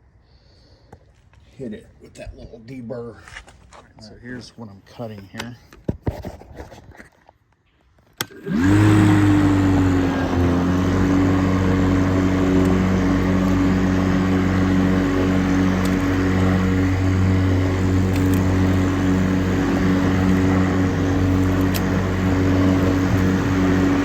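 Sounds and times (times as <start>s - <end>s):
lawn mower engine running: 8.2s - 24.0s.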